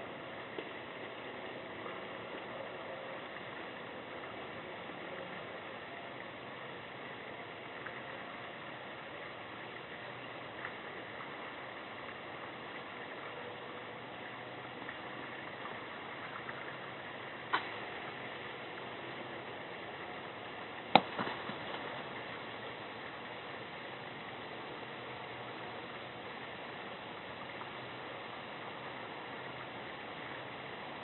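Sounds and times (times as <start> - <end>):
outdoor hiss: 0.0 - 31.0.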